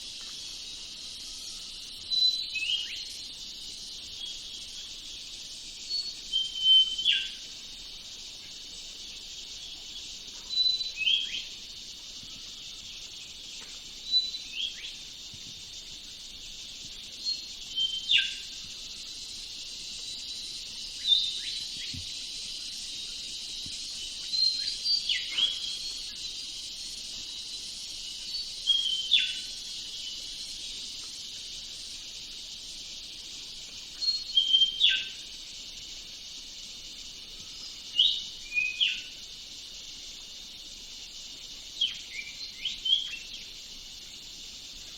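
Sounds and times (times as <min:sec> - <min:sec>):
insects hissing: 0:00.0 - 0:44.9
bird chirping: 0:20.0 - 0:31.0.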